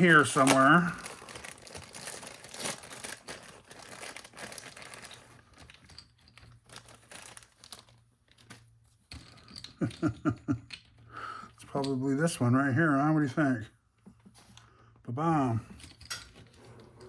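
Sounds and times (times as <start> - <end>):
plastic bags crinkling: 0.0 - 10.1.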